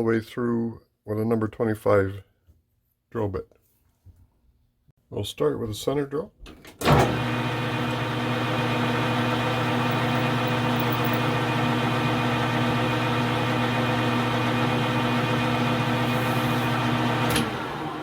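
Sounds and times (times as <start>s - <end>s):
metal lathe motor humming: 7.1s - 18.0s.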